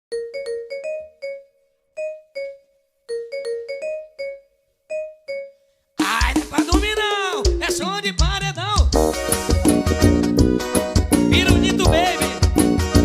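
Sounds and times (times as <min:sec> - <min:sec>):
bell-like electronic keyboard notes: 0:00.1 - 0:05.8.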